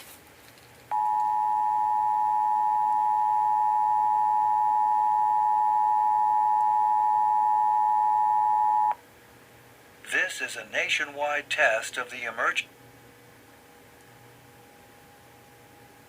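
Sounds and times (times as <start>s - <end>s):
two-tone alert alarm: 0.9s - 9.0s.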